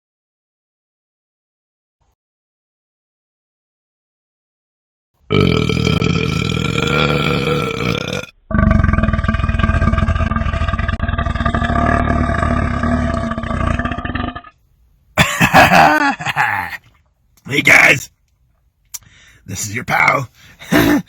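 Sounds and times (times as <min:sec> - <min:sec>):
man belching: 0:05.3 - 0:14.6, 0:15.2 - 0:16.9, 0:20.7 - 0:21.0.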